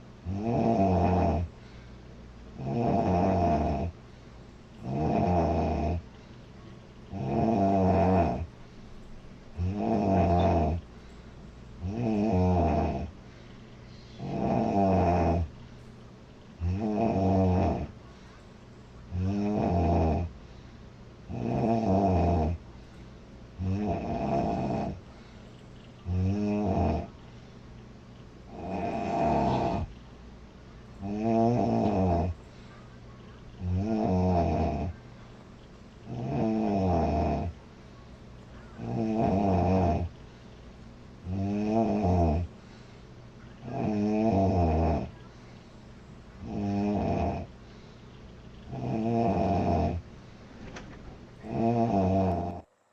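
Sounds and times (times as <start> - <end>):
woman snoring loudly: 0.3 - 1.5, 2.6 - 3.9, 4.8 - 6.0, 7.2 - 8.5, 9.6 - 10.8, 11.8 - 13.1, 14.2 - 15.5, 16.6 - 17.9, 19.2 - 20.3, 21.3 - 22.6, 23.6 - 25.0, 26.1 - 27.1, 28.5 - 29.9, 31.0 - 32.4, 33.6 - 34.9, 36.1 - 37.5, 38.8 - 40.1, 41.3 - 42.5, 43.7 - 45.1, 46.4 - 47.5, 48.7 - 50.0, 51.4 - 52.6.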